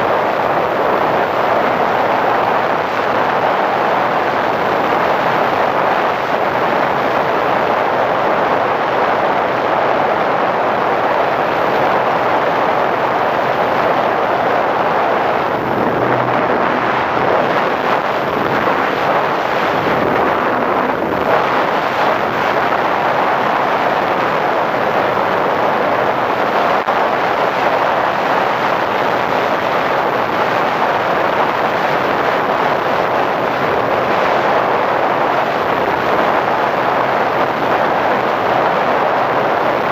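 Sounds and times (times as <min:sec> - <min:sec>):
wind rushing: 0:10.2 - 0:25.6.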